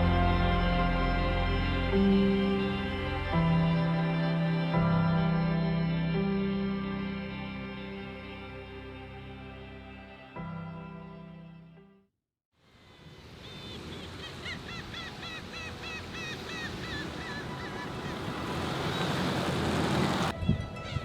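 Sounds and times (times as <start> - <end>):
background music: 0.0 - 12.0
bird calling in quick notes: 13.4 - 20.3
surf washing onto beach: 16.4 - 20.3.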